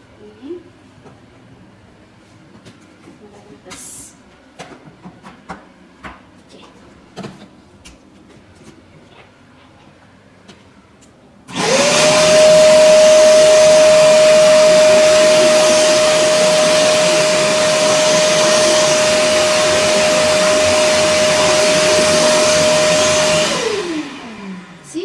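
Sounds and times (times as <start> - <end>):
vacuum cleaner motor whining: 11.5 - 25.0.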